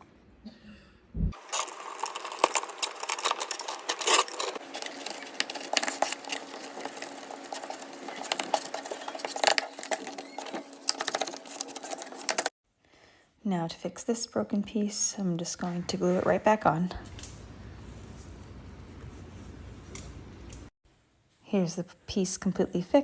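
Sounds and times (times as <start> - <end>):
small machine humming and clattering: 1.4 - 12.5.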